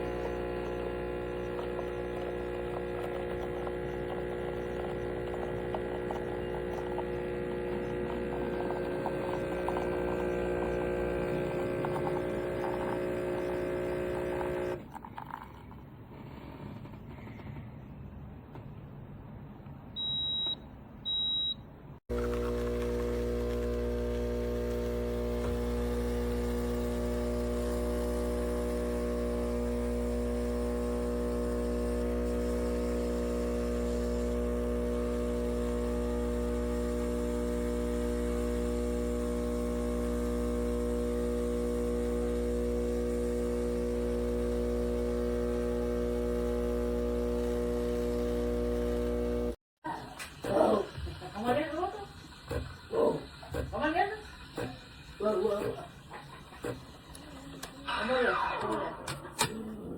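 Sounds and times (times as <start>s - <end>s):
espresso machine pump humming: 0.0s - 15.4s, 22.1s - 49.6s, 50.3s - 58.0s
short electronic beeps: 20.0s - 21.7s.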